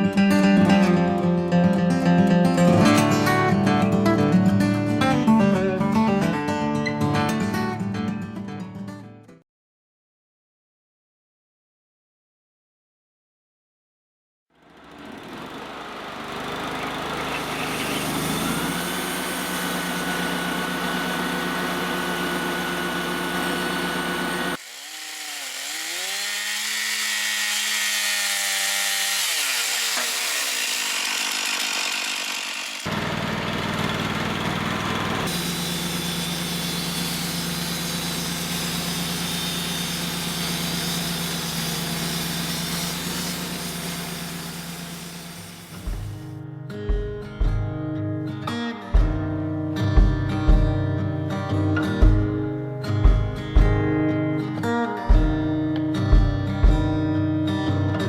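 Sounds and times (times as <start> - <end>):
sawmill engine humming: 14.6 - 46.4
saw whine: 14.7 - 46.3
band blade cutting logs: 17.2 - 32.9, 33.8 - 46.3.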